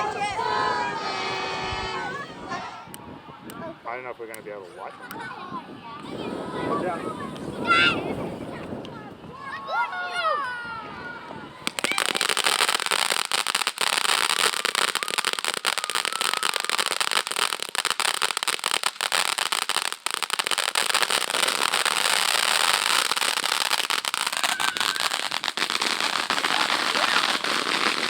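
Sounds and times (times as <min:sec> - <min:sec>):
firecrackers crackling: 0:06.0 - 0:09.3, 0:11.5 - 0:28.0.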